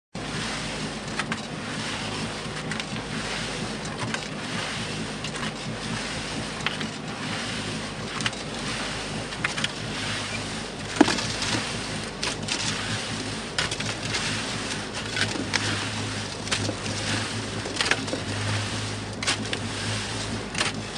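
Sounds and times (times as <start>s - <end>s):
concrete mixer motor hum: 0.2s - 20.9s
wet concrete churning: 0.2s - 20.9s
stones clattering: 10.9s - 11.6s.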